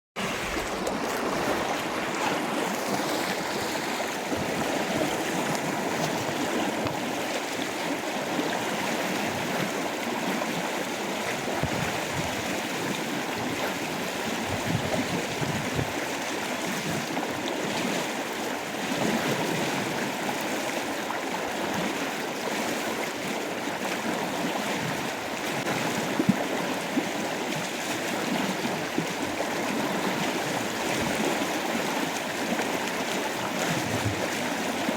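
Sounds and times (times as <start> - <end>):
river water rushing: 0.2 - 34.9.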